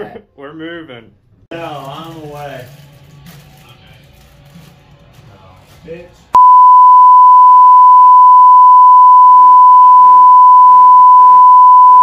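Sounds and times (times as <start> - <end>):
censor bleep tone: 6.4 - 12.0.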